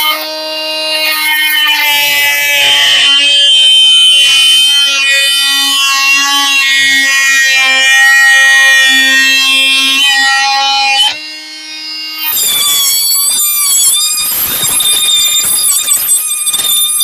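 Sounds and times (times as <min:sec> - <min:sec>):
oscillating multitool buzzing whine: 0:00.0 - 0:17.0.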